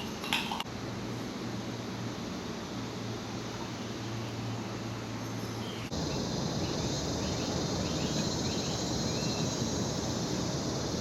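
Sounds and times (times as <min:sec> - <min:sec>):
insects buzzing: 0:03.4 - 0:11.0.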